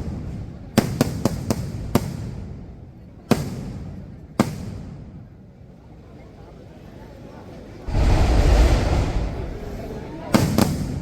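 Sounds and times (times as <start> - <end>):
fireworks exploding: 7.9 - 11.0.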